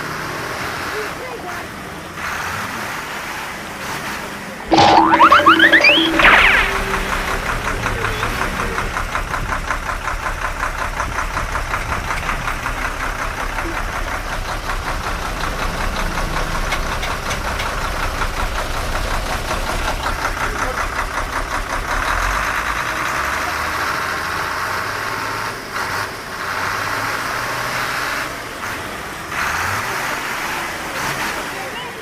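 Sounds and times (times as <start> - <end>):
truck engine knocking: 8.9 - 22.8.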